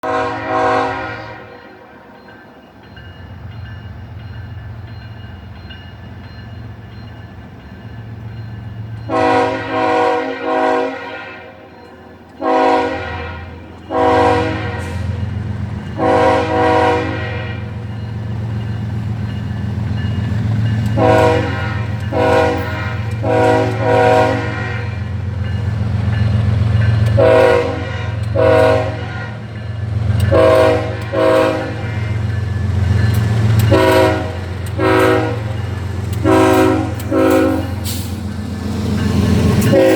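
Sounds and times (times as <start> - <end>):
locomotive air horn blasts: 0.0 - 1.9, 9.1 - 11.7, 12.4 - 15.2, 16.0 - 17.8, 20.9 - 25.2, 27.1 - 29.5, 30.2 - 32.3, 33.6 - 35.5, 36.2 - 38.2, 39.6 - 39.9.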